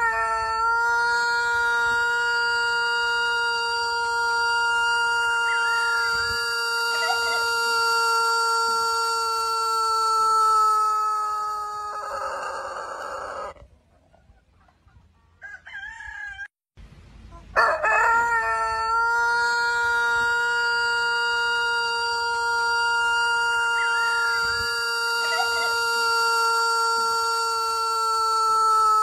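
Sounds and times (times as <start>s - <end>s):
rooster crowing: 0.0s - 13.6s, 15.4s - 16.5s, 17.4s - 29.0s
short higher rooster calls: 0.0s - 13.6s, 17.3s - 29.0s.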